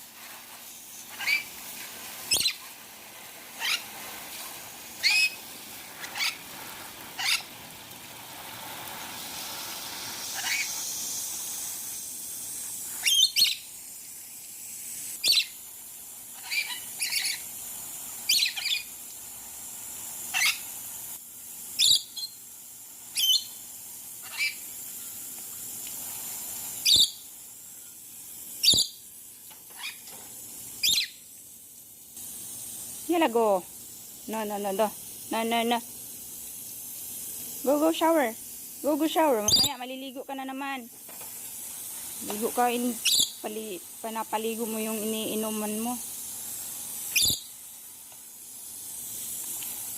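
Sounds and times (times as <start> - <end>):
faint steady hiss: 0.0 - 49.9
lorikeets high-pitched calls: 1.1 - 1.5, 2.3 - 2.6, 3.6 - 3.9, 5.0 - 5.4, 6.1 - 6.4, 7.2 - 7.5, 10.4 - 10.8, 13.0 - 13.7, 15.2 - 15.6, 16.4 - 17.4, 18.3 - 18.9, 20.3 - 20.6, 21.8 - 22.4, 23.2 - 23.6, 24.2 - 24.6, 26.8 - 27.2, 28.6 - 29.0, 29.8 - 30.0, 30.8 - 31.2, 39.4 - 39.8, 43.0 - 43.5, 47.1 - 47.6.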